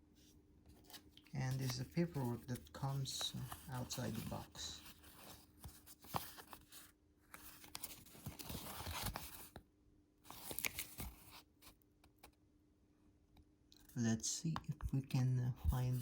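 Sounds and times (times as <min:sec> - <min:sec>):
paper rustling: 0:00.7 - 0:09.6, 0:10.3 - 0:11.8.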